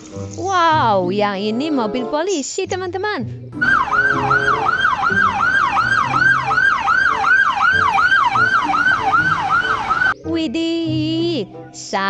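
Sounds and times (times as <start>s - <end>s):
toy electronic siren wailing: 3.6s - 10.2s.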